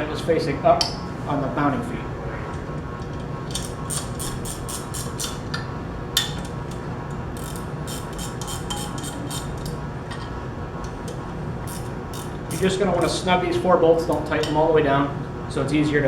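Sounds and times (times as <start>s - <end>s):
ratchet wrench clicking: 3.5s - 5.4s, 7.4s - 9.8s, 11.6s - 13.2s.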